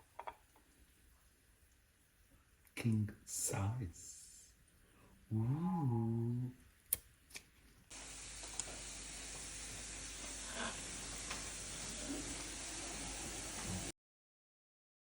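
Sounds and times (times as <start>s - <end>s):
steak sizzling in a pan: 7.9s - 13.9s.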